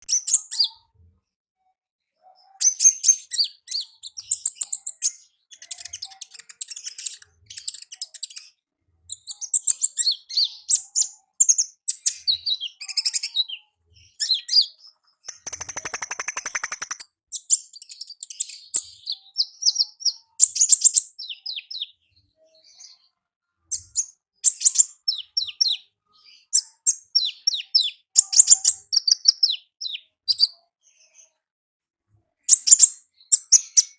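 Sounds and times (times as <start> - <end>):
buzzing bird trill: 15.3 - 17.0
bird twittering: 15.3 - 17.1.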